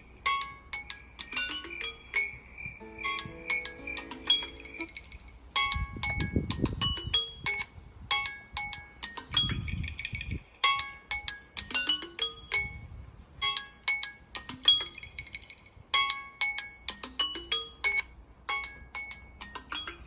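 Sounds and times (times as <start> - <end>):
electronic alarm chime tone: 2.8 - 5.0.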